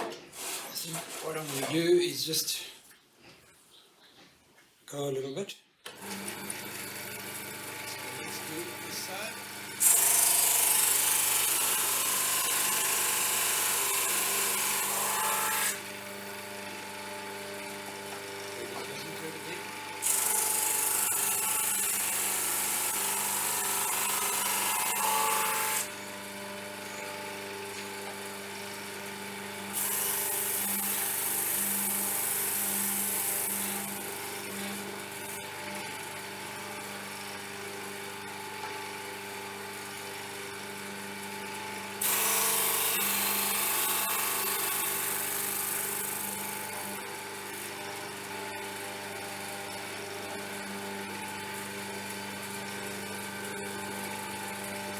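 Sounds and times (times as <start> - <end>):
drum sander motor hum: 6.0 - 14.9.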